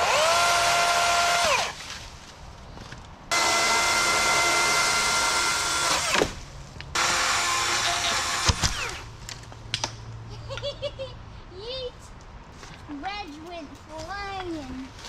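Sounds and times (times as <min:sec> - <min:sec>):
power tool motor whining: 0:00.0 - 0:01.8, 0:03.3 - 0:09.1.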